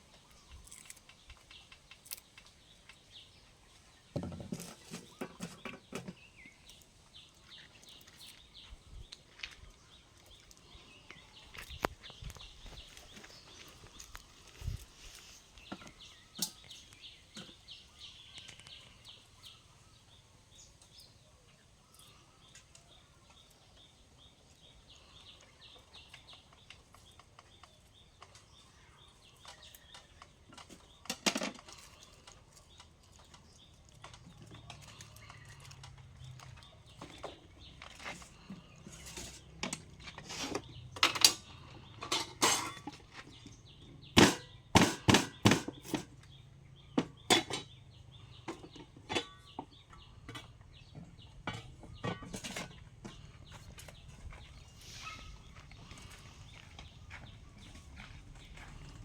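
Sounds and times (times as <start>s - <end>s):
cooking utensils knocking: 44.2s - 46.1s, 51.4s - 53.2s.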